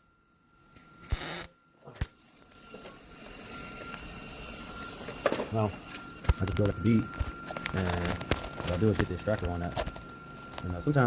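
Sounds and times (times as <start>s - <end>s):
welder arc crackling: 1.0s - 1.5s, 5.5s - 11.0s.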